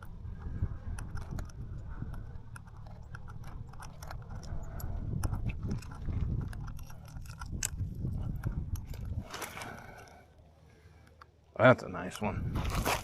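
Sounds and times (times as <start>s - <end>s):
wind buffeting microphone: 0.0s - 10.0s, 12.2s - 13.0s
sharp clicks and ticks: 0.0s - 10.2s.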